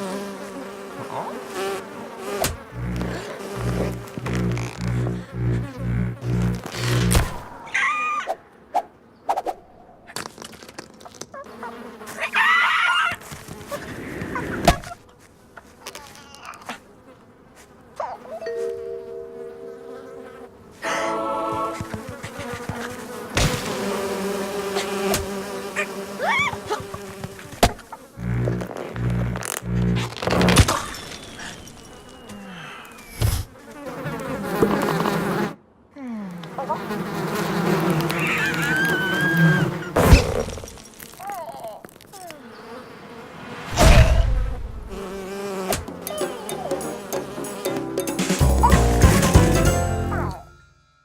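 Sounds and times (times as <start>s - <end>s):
insect buzz: 0.0s - 7.7s, 10.3s - 13.9s, 19.4s - 35.6s, 36.3s - 48.0s
thin falling tone: 46.0s - 51.0s.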